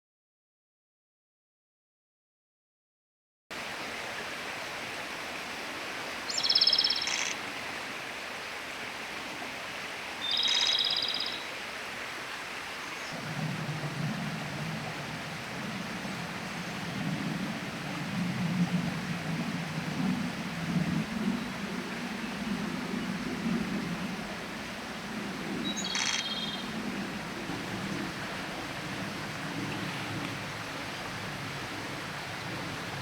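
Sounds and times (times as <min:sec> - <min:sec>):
bird singing trills: 0:06.3 - 0:07.3, 0:10.2 - 0:11.4, 0:25.6 - 0:26.7.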